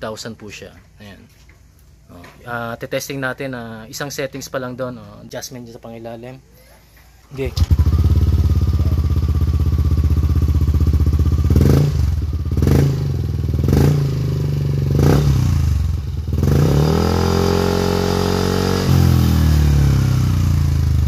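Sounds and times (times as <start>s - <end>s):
scooter engine idling and revving: 7.4s - 21.0s.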